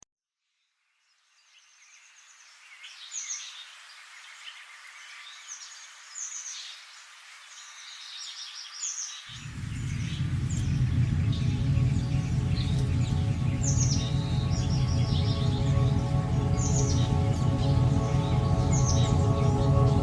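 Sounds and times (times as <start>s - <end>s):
steady outdoor hiss: 0.8s - 20.0s
songbirds chirping: 0.9s - 20.0s
deep low music: 9.4s - 20.0s.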